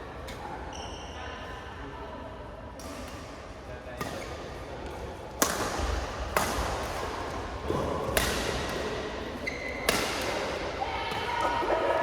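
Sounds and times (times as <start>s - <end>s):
racket hitting shuttlecock: 5.4s - 7.0s, 7.7s - 9.0s, 9.8s - 11.4s.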